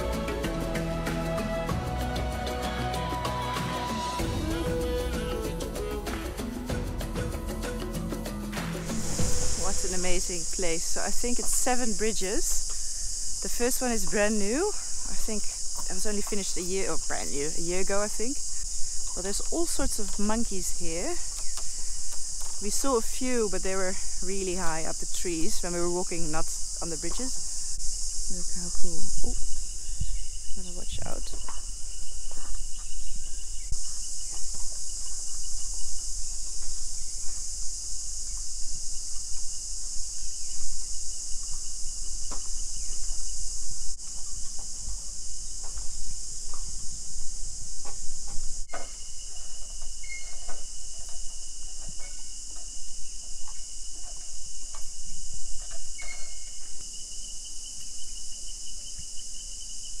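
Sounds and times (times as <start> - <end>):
insect chorus buzzing: 0.0 - 60.0
trilling insect: 0.0 - 60.0.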